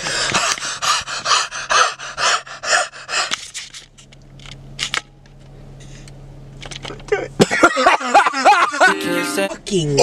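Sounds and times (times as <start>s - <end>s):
rapid panting breaths: 0.0s - 3.7s.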